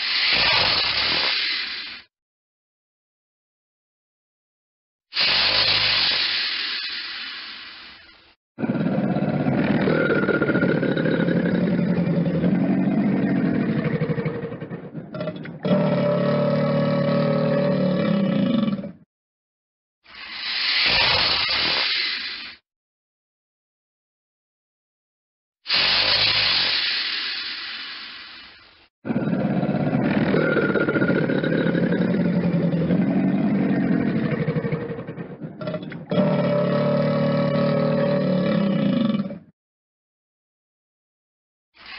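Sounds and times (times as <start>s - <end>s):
crocodile growling: 8.6s - 19.0s, 29.0s - 39.5s.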